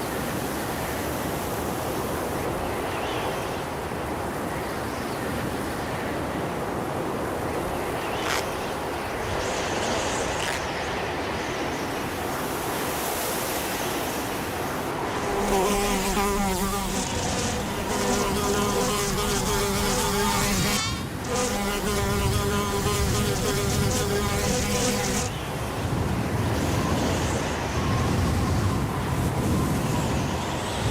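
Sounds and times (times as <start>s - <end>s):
wind noise: 0.0s - 30.9s
steady buzz: 14.8s - 30.9s.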